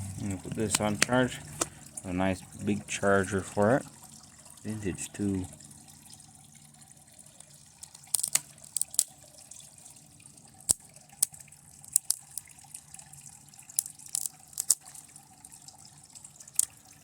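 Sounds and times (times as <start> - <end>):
faint steady hum: 0.0 - 17.0
burning circuit board crackling: 7.9 - 9.1.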